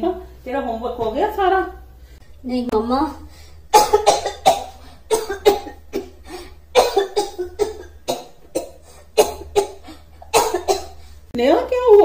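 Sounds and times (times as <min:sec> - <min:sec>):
girl coughing: 0:03.7 - 0:11.0.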